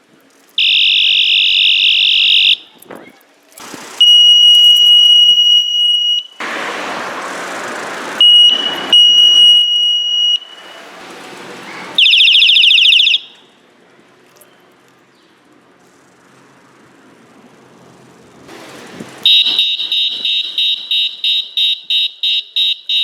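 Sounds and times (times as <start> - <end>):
electronic horn hissing: 0.6 - 2.6, 4.0 - 6.4, 8.2 - 10.9, 19.2 - 23.0
high-pitched electronic horn beep: 0.6 - 2.6, 4.0 - 6.4, 8.2 - 10.6, 19.3 - 23.0.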